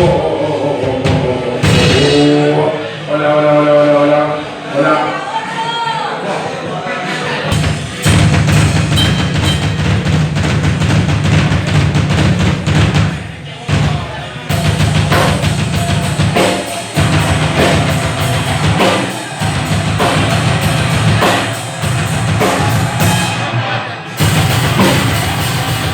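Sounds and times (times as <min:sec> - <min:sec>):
drum and cymbal hits: 0:00.0 - 0:02.7, 0:07.5 - 0:25.9
rock band playing live: 0:07.5 - 0:25.9.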